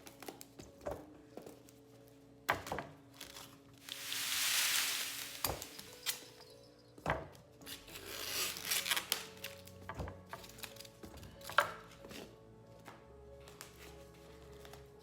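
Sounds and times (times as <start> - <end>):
soft background music: 0.0 - 15.0
kitchen items knocking and rustling: 2.5 - 7.5.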